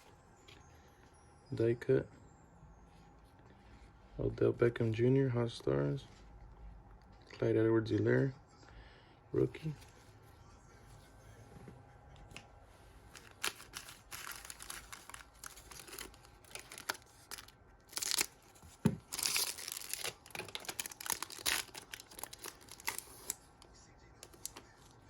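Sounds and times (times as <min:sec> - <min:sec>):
trading cards and foil pack crinkling: 0:13.0 - 0:25.0.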